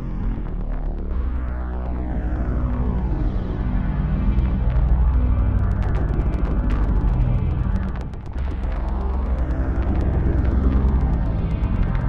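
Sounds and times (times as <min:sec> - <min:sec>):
low electronic drone: 0:00.0 - 0:12.0
quick crackling clicks: 0:04.0 - 0:12.0.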